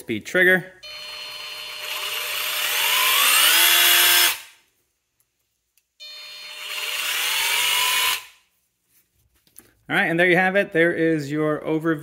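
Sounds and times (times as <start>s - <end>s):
impact wrench motor whine: 0.9s - 4.6s, 6.0s - 8.4s.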